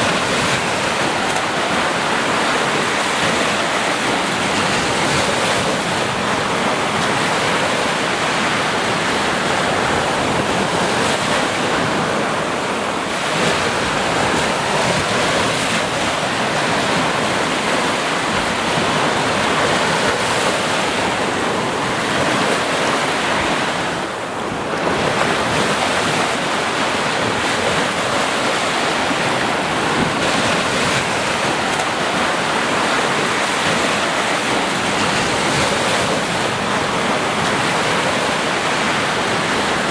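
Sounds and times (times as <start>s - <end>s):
sea waves breaking on beach: 0.0s - 39.9s.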